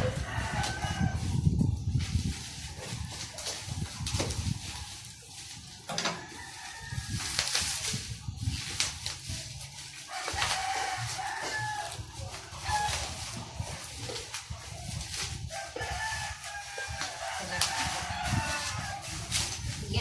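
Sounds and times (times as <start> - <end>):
rooster crowing: 0.0 - 1.4, 5.9 - 7.3, 10.1 - 13.3, 15.4 - 19.3
plastic packaging rustling: 0.0 - 20.0.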